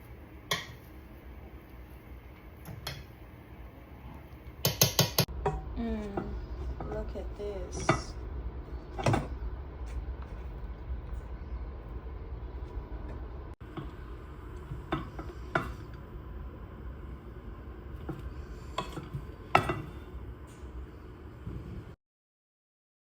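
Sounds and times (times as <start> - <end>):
low hum: 5.3 - 22.0
spoon clinking and scraping pot: 18.0 - 20.1.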